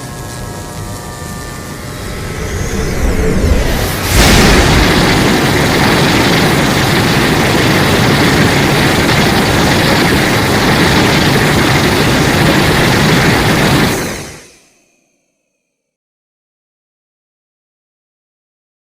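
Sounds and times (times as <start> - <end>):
loud steady rumbling: 0.0 - 14.4.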